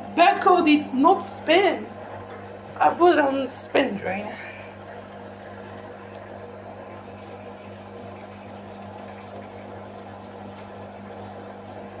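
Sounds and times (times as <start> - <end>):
washing machine spinning hum: 0.0 - 12.0.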